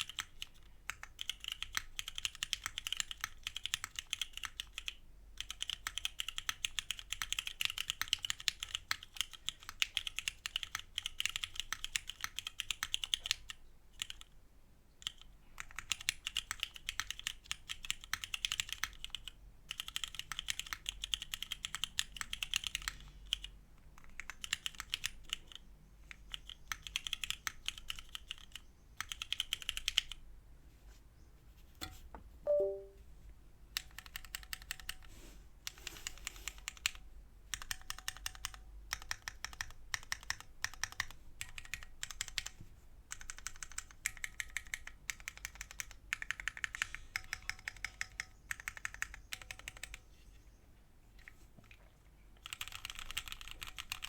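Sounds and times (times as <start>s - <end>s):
mechanical keyboard typing: 0.0s - 14.4s, 15.0s - 30.2s, 32.5s - 33.0s, 33.7s - 35.1s, 35.7s - 50.1s, 52.4s - 54.0s
falling two-note beep: 32.5s - 33.0s.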